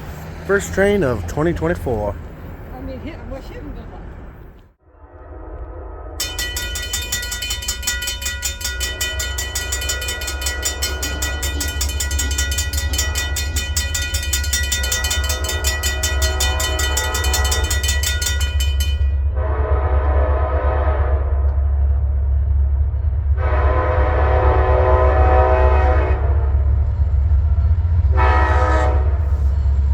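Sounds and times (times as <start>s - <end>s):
freight train rumble: 0.0s - 29.9s
crossing bell ringing: 0.5s - 2.2s, 6.2s - 19.5s
train horn blowing: 5.0s - 21.7s, 23.4s - 26.8s, 28.0s - 29.6s.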